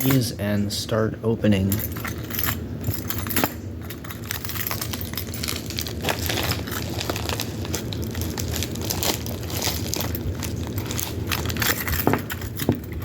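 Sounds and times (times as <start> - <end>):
key scraping packing tape: 1.9 - 13.0
packaging crinkling: 4.2 - 12.5.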